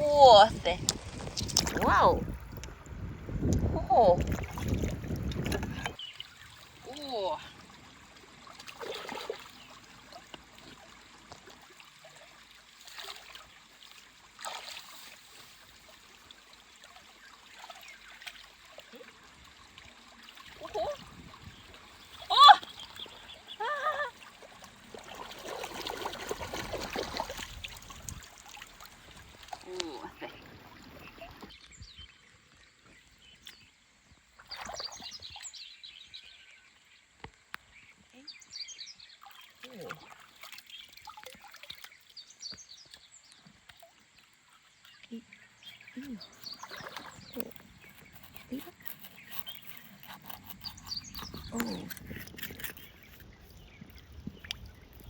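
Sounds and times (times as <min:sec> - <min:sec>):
faint trickling water: 0:00.0 - 0:55.0
small birds chirping: 0:20.4 - 0:24.5, 0:29.1 - 0:55.0.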